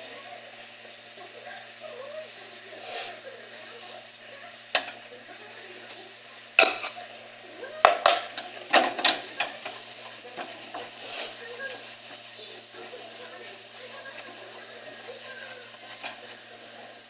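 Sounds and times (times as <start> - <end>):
utensil scraping a frying pan: 6.6 - 7.1, 7.8 - 17.0.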